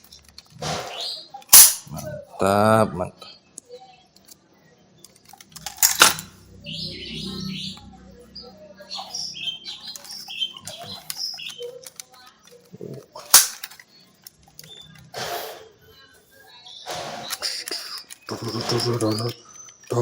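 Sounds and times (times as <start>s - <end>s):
high chirping squeaks: 0.6s - 2.0s, 6.3s - 13.0s, 13.8s - 20.0s
toy gun snaps: 1.4s - 1.9s, 13.3s - 13.9s
plastic rattles: 5.0s - 6.3s, 9.8s - 15.1s.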